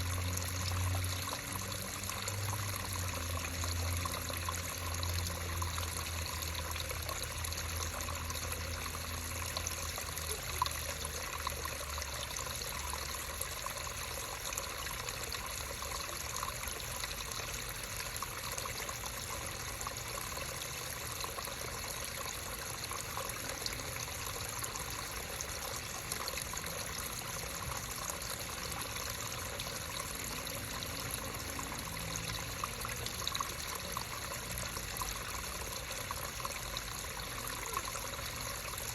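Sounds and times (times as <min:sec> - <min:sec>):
creek water trickling: 0:00.0 - 0:38.9.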